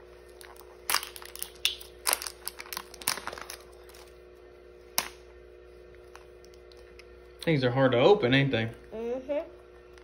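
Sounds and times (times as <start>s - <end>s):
plastic packaging crinkling: 0.3s - 4.2s.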